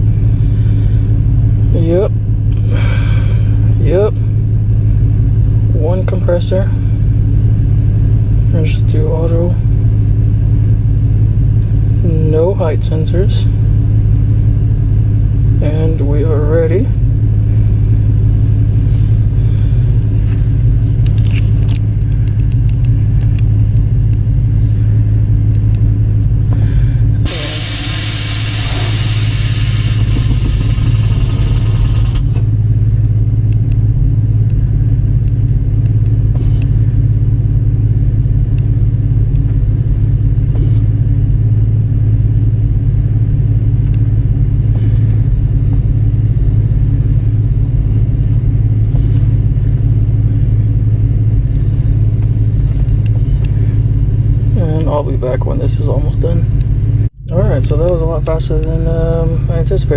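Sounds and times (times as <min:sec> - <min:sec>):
car engine humming: 0:00.0 - 0:59.9
air hissing from valves: 0:26.4 - 0:32.4, 0:40.5 - 0:41.0, 0:44.7 - 0:45.3.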